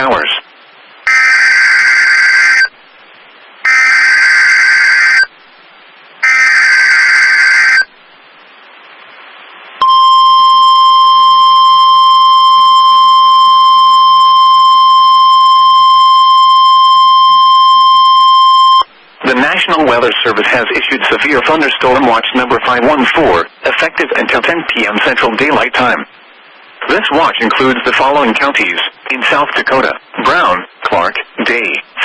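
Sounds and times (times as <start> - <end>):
single-pitch warning alarm tone: 1.1 - 2.7, 3.7 - 5.3, 6.2 - 7.9, 9.8 - 18.9.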